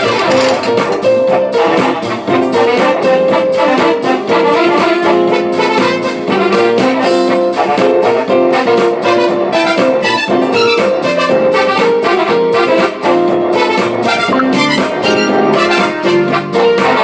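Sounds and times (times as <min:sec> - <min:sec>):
brass-like melody: 0:00.0 - 0:17.0
steady drum beat: 0:00.0 - 0:17.0.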